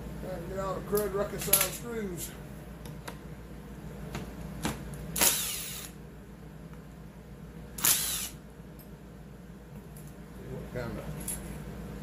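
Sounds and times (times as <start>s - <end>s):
cordless drill spinning: 5.2s - 6.0s, 7.8s - 8.4s.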